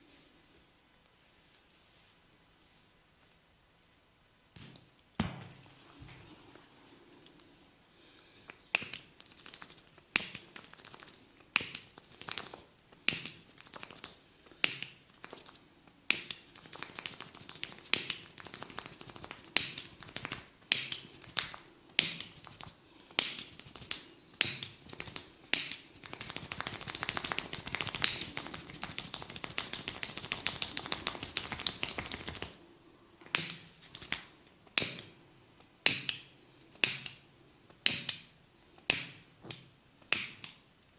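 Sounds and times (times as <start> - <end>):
hands slapping head: 8.8 - 32.6, 33.3 - 35.0
fast tapping on head: 9.2 - 32.6.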